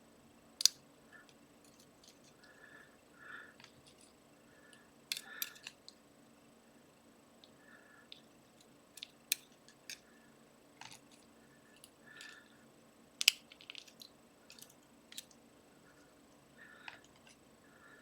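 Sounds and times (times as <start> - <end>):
small metallic clicks and taps: 13.2 - 15.4.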